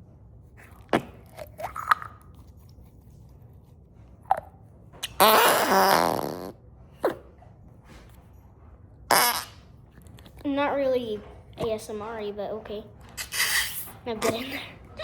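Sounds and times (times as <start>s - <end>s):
putty squelches: 0.6s - 6.5s
fart putty fart noise: 5.0s - 6.6s, 9.1s - 9.7s.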